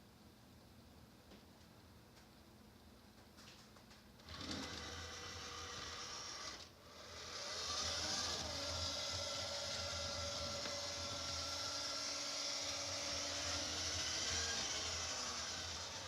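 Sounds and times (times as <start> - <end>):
robot vacuum motor hum and whine: 4.2 - 16.0.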